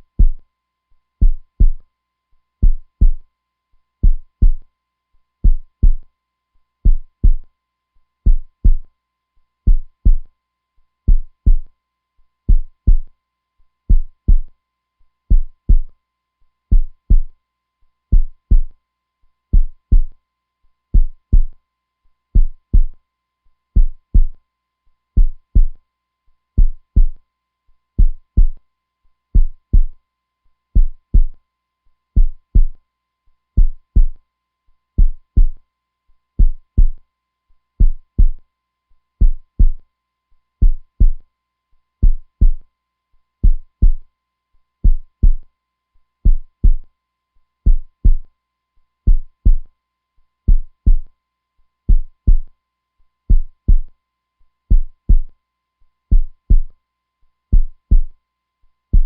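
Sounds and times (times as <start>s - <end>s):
heartbeat thumps: 0.2s - 0.4s, 1.2s - 1.8s, 2.6s - 3.2s, 4.0s - 4.6s, 5.4s - 6.0s, 6.9s - 7.4s, 8.3s - 8.8s, 9.7s - 10.3s, 11.1s - 11.7s, 12.5s - 13.1s, 13.9s - 14.5s, 15.3s - 15.9s, 16.7s - 17.3s, 18.1s - 18.7s, 19.6s - 20.1s, 21.0s - 21.5s, 22.4s - 23.0s, 23.8s - 24.4s, 25.2s - 25.8s, 26.6s - 27.2s, 28.0s - 28.6s, 29.4s - 30.0s, 30.8s - 31.4s, 32.2s - 32.8s, 33.6s - 34.2s, 35.0s - 35.6s, 36.4s - 37.0s, 37.8s - 38.4s, 39.2s - 39.8s, 40.6s - 41.2s, 42.0s - 42.6s, 43.4s - 44.0s, 44.8s - 45.4s, 46.3s - 46.8s, 47.7s - 48.2s, 49.1s - 49.7s, 50.5s - 51.1s, 51.9s - 52.5s, 53.3s - 53.9s, 54.7s - 55.3s, 56.1s - 56.7s, 57.5s - 58.1s.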